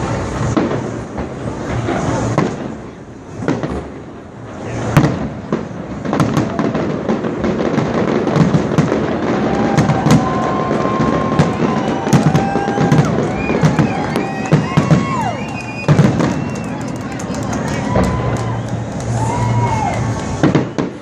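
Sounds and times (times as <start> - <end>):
fireworks booming: 0.0 - 21.0
fireworks crackling bangs: 0.0 - 21.0.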